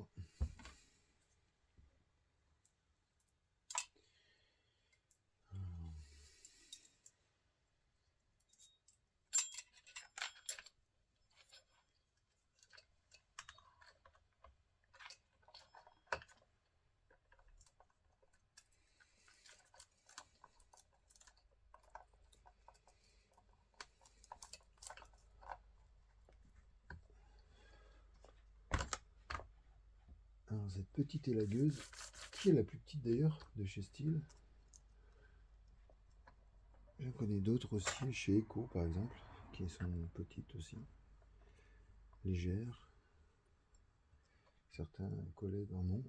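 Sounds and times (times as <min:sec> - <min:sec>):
hands handling chainsaw parts: 0:08.4 - 0:30.2.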